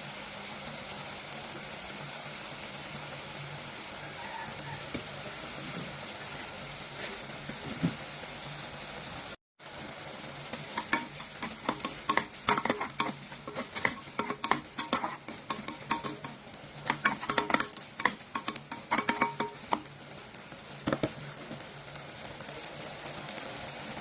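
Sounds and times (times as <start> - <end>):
frying sizzle: 0.0 - 24.0
metal utensil scraping frying pan: 10.5 - 20.0.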